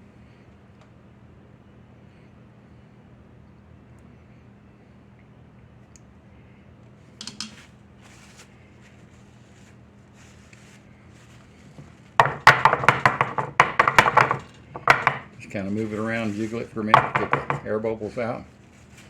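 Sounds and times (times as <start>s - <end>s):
low steady hum: 0.0s - 19.0s
dish knocking on counter: 12.2s - 15.4s, 16.9s - 17.7s.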